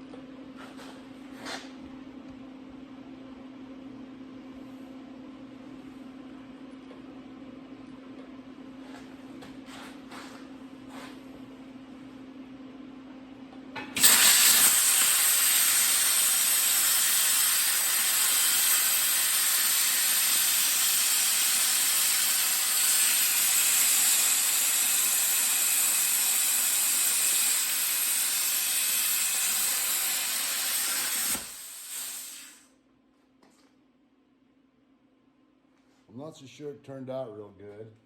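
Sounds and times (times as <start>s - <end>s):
plasma cutter arc hissing: 14.0s - 32.7s.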